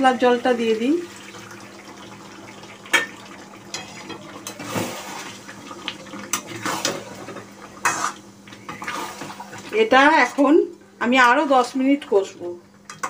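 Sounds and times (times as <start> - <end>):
liquid sloshing in a pan: 1.0 - 9.9.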